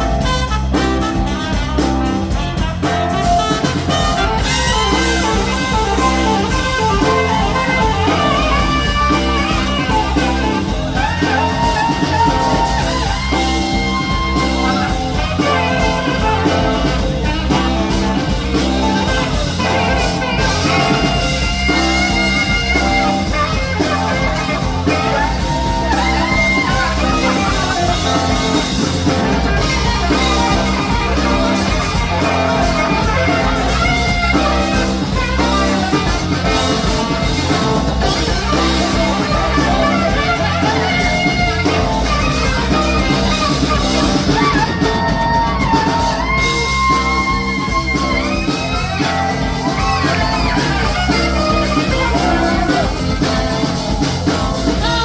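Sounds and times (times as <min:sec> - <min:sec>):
electric guitar: 0:00.0 - 0:55.0
live band playing soul-rock: 0:00.0 - 0:55.0.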